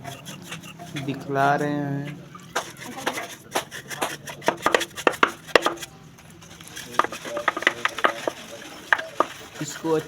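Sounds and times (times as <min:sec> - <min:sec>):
hard parts clicking and knocking: 0:02.5 - 0:05.9, 0:06.6 - 0:10.0.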